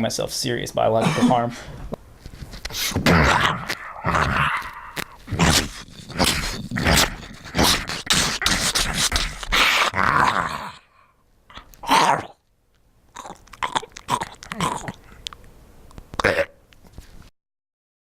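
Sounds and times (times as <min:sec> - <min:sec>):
person growling and snarling: 0:02.9 - 0:11.0, 0:11.6 - 0:12.4, 0:13.2 - 0:15.1.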